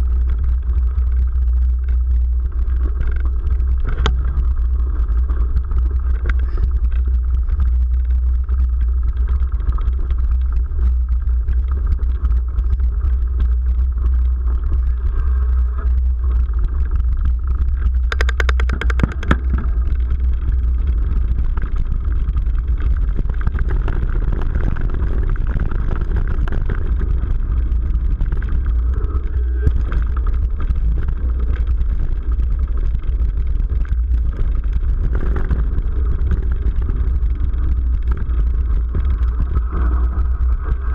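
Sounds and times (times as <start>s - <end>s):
bike trail bumps: 0.0s - 40.9s
rapid bike clicking: 0.0s - 40.9s
wind rumble: 0.0s - 40.9s.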